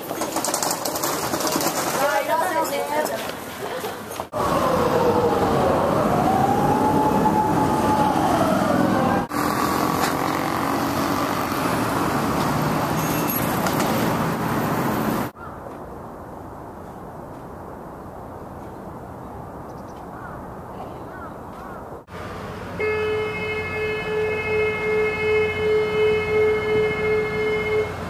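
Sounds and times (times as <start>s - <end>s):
busy street noise: 0.0s - 28.0s
traffic noise: 0.0s - 28.0s
siren wailing: 4.3s - 9.6s.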